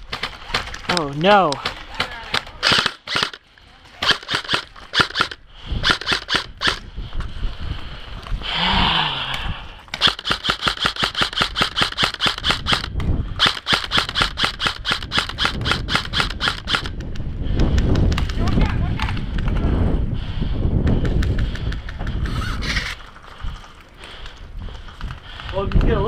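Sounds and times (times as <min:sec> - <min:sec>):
airsoft guns firing full-auto: 0:01.6 - 0:03.4, 0:04.0 - 0:06.8, 0:10.0 - 0:16.9.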